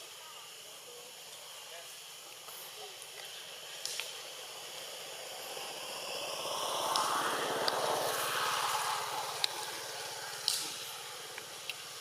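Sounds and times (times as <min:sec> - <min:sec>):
passing engine: 0:03.5 - 0:12.0.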